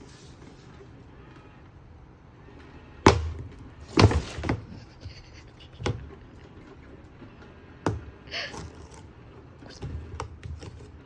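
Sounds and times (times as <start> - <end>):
rustling scuffle: 3.8 - 4.9.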